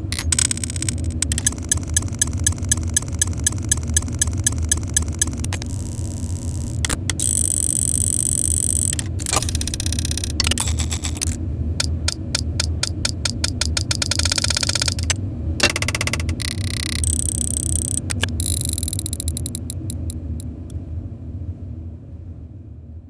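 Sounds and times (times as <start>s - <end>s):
metal gear mechanism clicking: 0.0s - 20.5s
mechanical whir: 0.0s - 20.8s.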